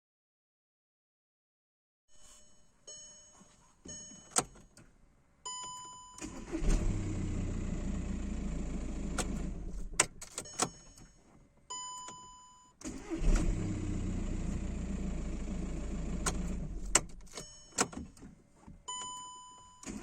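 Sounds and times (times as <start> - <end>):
dashboard chimes: 2.2 - 4.6
ignition key clicks: 4.2 - 4.9, 8.9 - 11.1, 16.0 - 20.0
diesel engine cranking and running: 6.2 - 10.5, 12.8 - 17.4.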